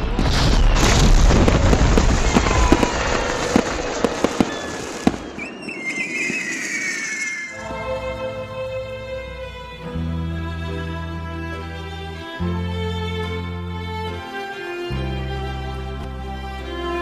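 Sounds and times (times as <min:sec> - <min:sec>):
low rumble: 0:00.0 - 0:05.9
fireworks crackling and banging: 0:00.0 - 0:07.6
fireworks whistling: 0:00.3 - 0:08.2.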